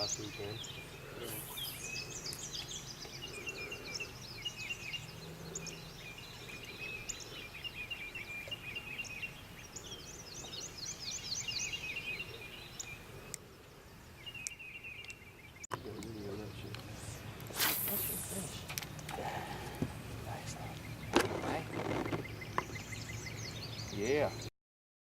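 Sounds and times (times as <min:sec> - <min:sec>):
songbirds singing: 0:00.0 - 0:24.5.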